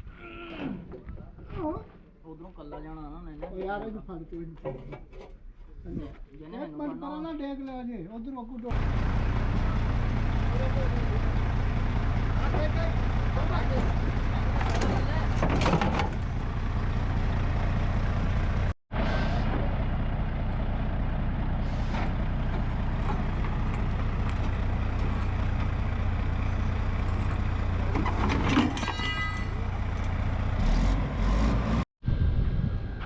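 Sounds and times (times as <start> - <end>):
truck engine running: 8.7 - 31.8.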